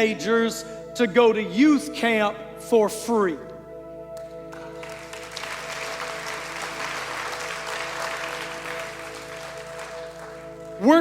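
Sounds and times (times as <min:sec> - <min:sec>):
congregation applauding: 0:04.2 - 0:11.0.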